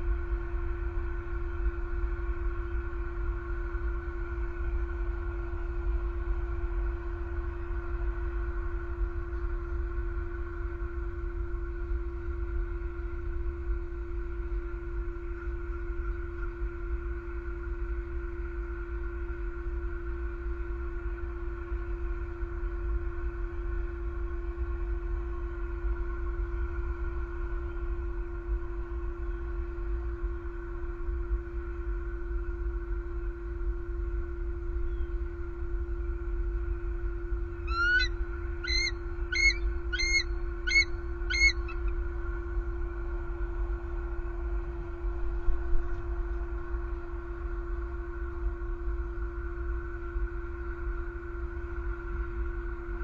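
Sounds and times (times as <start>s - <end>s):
hum of fixed tones: 0.0s - 53.0s
eagle piping calls: 37.7s - 41.9s.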